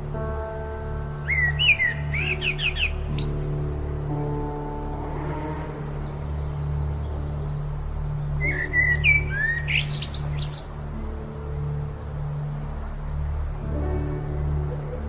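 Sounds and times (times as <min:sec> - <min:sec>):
small bird chirping: 0:08.5 - 0:10.8.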